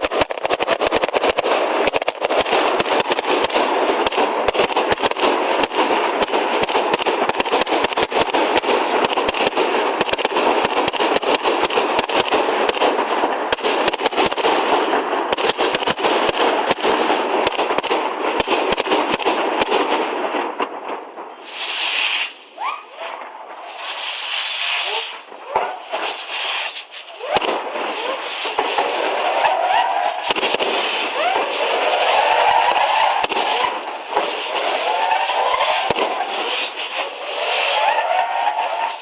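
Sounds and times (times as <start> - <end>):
fireworks bangs and crackles: 0.0 - 39.0.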